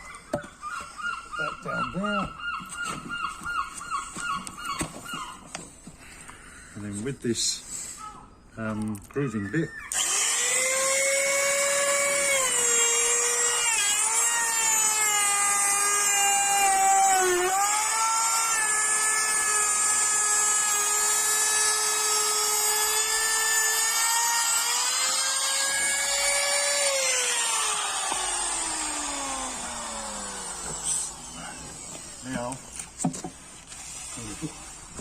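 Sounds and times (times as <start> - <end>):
electric router whining: 9.9 - 35.0.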